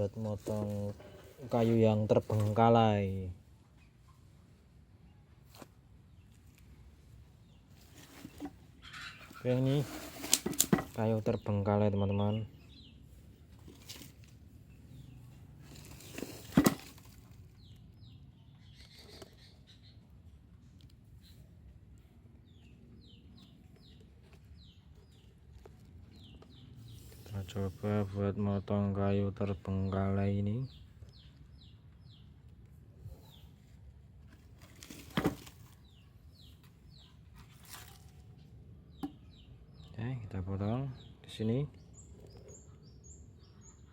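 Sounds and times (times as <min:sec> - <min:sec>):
faint birds chirping: 0:00.0 - 0:43.9
wood knock with rustle: 0:09.9 - 0:11.0.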